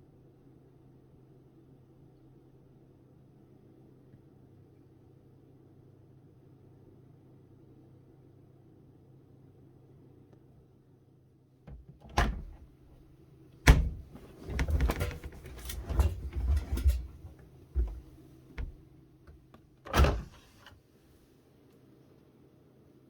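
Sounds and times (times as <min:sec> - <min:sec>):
washing machine door knocks: 0:11.7 - 0:12.7, 0:13.6 - 0:18.8
rustling: 0:13.7 - 0:18.8.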